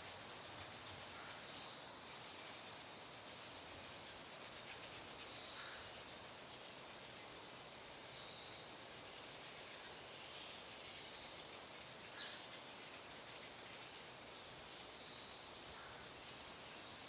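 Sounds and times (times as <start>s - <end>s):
steady outdoor hiss: 0.0s - 17.0s.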